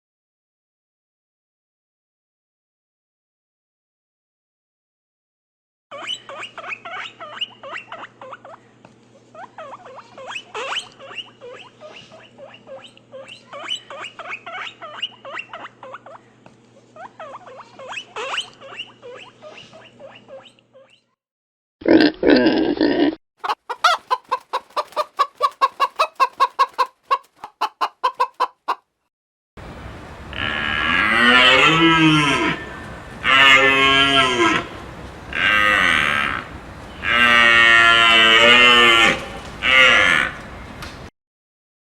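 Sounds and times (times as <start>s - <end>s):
chickens clucking: 23.4s - 28.8s, 30.1s - 38.3s
cow mooing: 30.3s - 40.5s.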